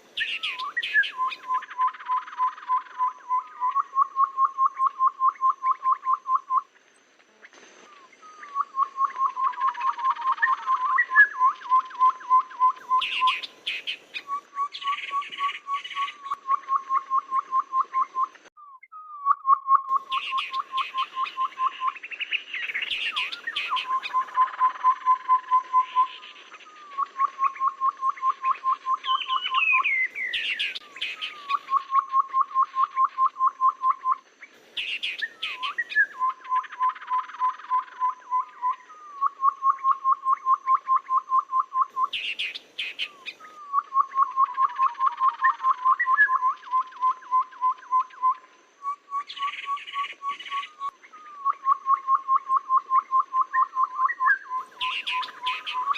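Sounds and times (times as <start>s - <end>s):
bird chirps and calls: 0.0s - 6.6s, 7.9s - 55.9s
bird piping notes: 0.0s - 6.7s, 7.8s - 55.9s.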